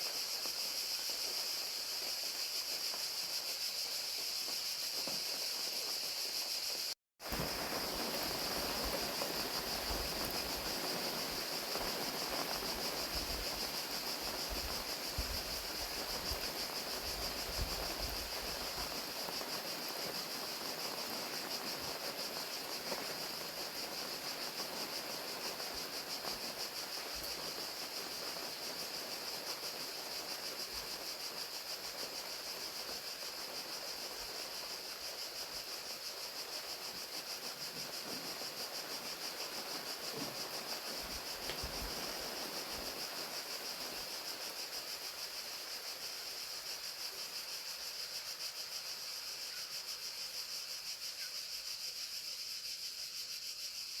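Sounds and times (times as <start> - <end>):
crickets chirping: 0.0 - 54.0
rain falling: 7.2 - 47.4.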